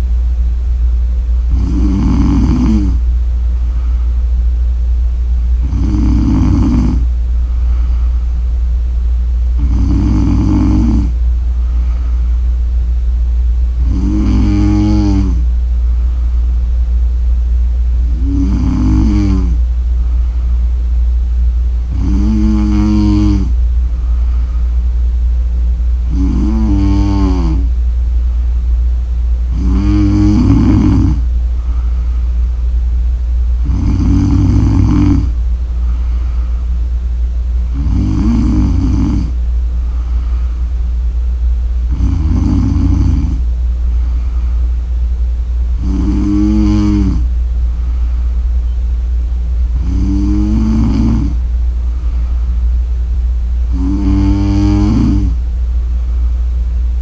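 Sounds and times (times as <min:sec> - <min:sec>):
steady low hum: 0:00.0 - 0:57.0
woman snoring: 0:01.5 - 0:03.0, 0:05.6 - 0:07.1, 0:09.6 - 0:11.2, 0:13.8 - 0:15.5, 0:18.1 - 0:19.6, 0:21.8 - 0:23.6, 0:26.0 - 0:27.8, 0:29.5 - 0:31.9, 0:33.6 - 0:36.5, 0:37.7 - 0:40.6, 0:41.9 - 0:43.5, 0:45.8 - 0:47.9, 0:49.7 - 0:52.3, 0:53.6 - 0:55.4.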